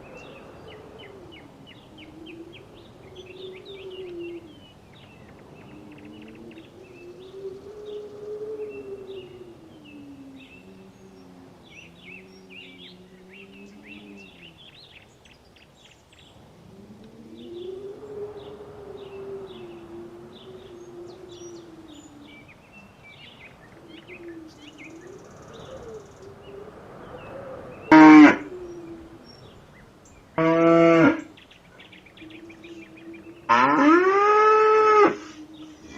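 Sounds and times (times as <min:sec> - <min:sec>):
cows mooing: 0:33.5 - 0:35.2.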